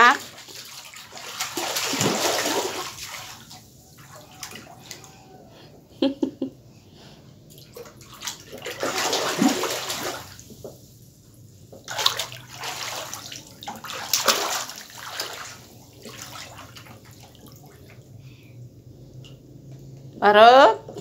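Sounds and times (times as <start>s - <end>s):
short sharp water splashes: 0.0s - 5.1s, 7.5s - 10.5s, 11.8s - 18.0s
floodwater splashing and sloshing: 0.0s - 5.3s, 7.5s - 10.9s, 11.7s - 18.2s.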